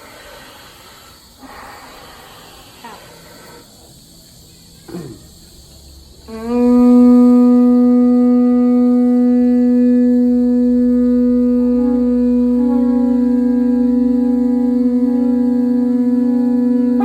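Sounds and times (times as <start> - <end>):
conch shell trumpet note: 6.2 - 17.0.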